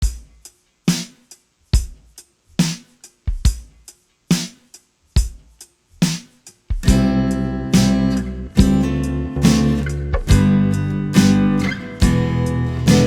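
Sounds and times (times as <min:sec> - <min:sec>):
hi-hat ticks: 0:00.0 - 0:13.0
bass drum: 0:05.2 - 0:13.0
snare drum hits: 0:07.8 - 0:08.8, 0:09.5 - 0:10.6, 0:11.2 - 0:12.3.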